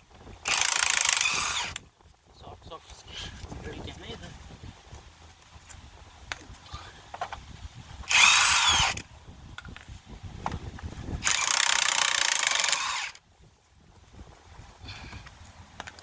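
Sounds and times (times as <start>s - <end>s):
impact wrench spinning lug nuts: 0.4s - 1.9s, 8.0s - 9.8s, 10.4s - 13.2s.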